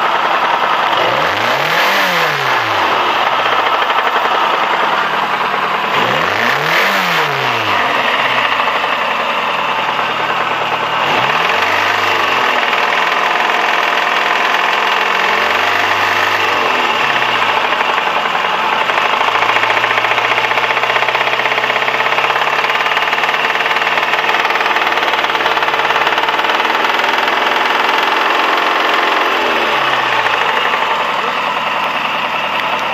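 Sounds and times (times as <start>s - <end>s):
knocking car engine revving: 0.0s - 32.9s.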